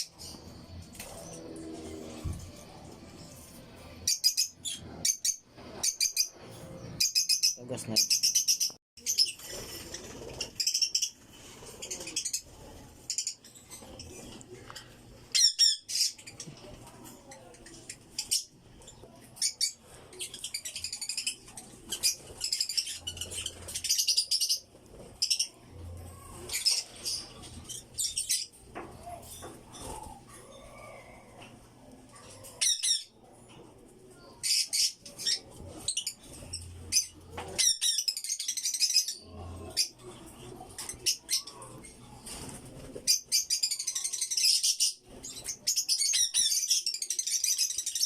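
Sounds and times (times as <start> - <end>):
lovebirds squawking and chirping: 17.7 - 25.6, 34.4 - 48.0.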